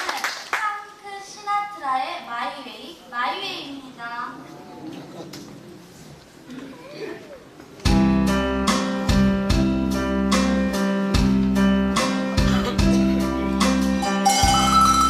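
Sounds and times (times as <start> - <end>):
guitar accompaniment: 7.8 - 15.0
tuned cowbell melody: 14.0 - 15.0.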